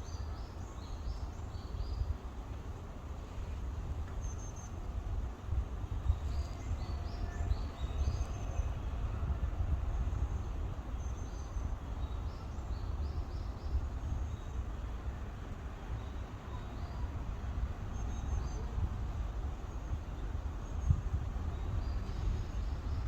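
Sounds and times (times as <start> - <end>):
wind buffeting microphone: 4.8 - 15.0, 17.0 - 23.0.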